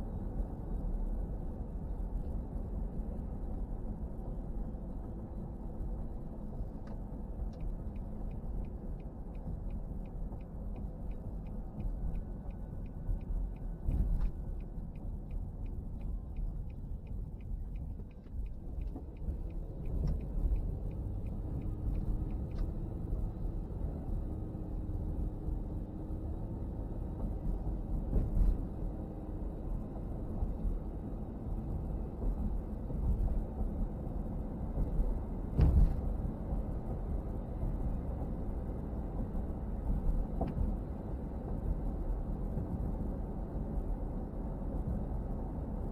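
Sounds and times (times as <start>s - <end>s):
road and engine rumble: 0.0s - 45.9s
turn signal ticking: 6.4s - 25.2s
thumps from road bumps: 13.8s - 14.4s, 34.8s - 36.2s.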